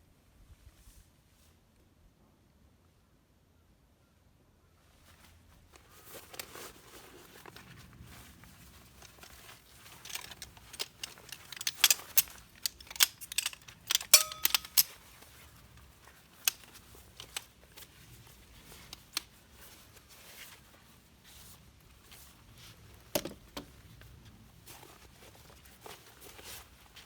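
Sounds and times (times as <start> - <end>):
small hard objects clicking: 10.0 - 14.9.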